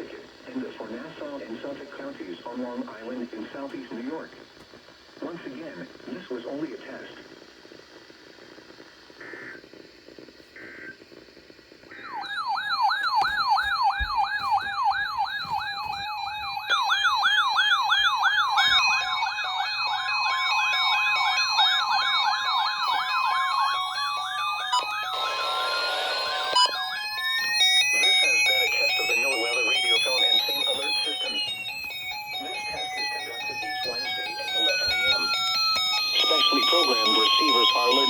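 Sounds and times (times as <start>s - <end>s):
electronic sirens warbling: 11.9s - 38.0s.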